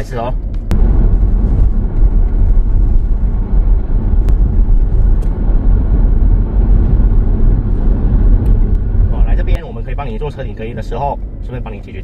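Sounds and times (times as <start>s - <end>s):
road and engine rumble in car: 0.0s - 12.0s.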